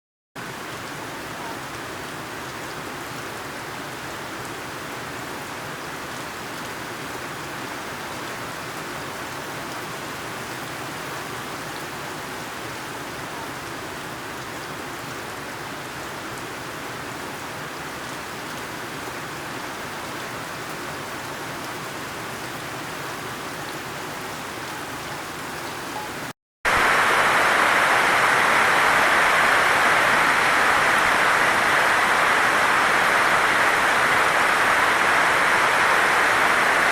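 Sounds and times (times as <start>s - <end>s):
heavy rain hissing: 26.2s - 36.9s.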